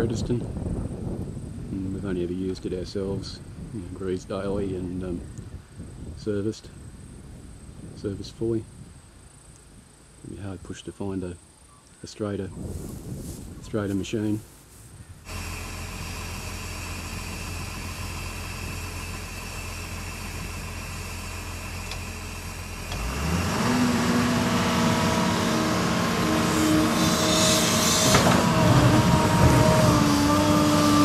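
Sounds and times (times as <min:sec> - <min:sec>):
excavator diesel engine: 0:15.3 - 0:31.0
hydraulic pump whine: 0:15.3 - 0:31.0.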